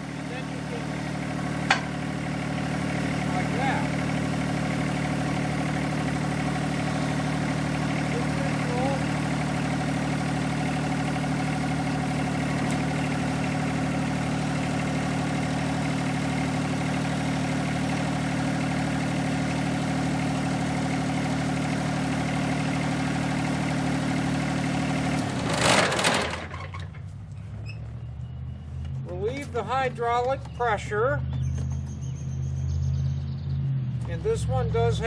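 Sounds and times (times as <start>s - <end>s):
engine shutting off burst: 0.0s - 27.4s
diesel tractor idling: 0.0s - 35.0s.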